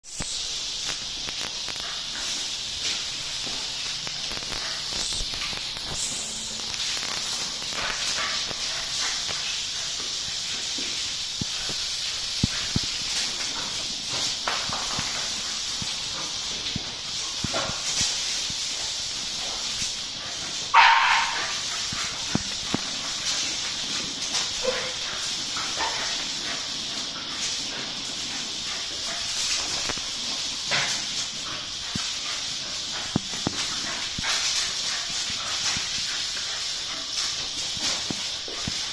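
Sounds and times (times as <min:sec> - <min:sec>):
water spraying from hose: 0:00.0 - 0:38.9
dogs barking: 0:20.3 - 0:30.0.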